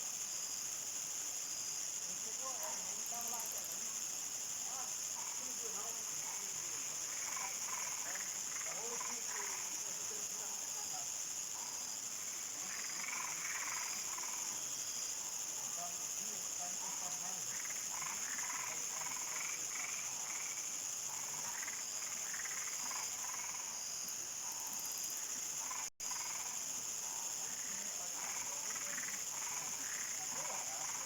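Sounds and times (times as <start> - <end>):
cricket trill: 0.0 - 31.0
frogs calling: 16.6 - 23.7, 25.6 - 31.0.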